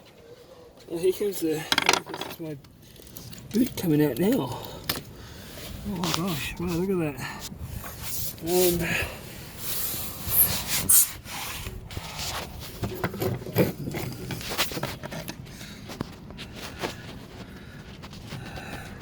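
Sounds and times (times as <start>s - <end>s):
mast boot rubbing and scraping: 9.5s - 19.0s.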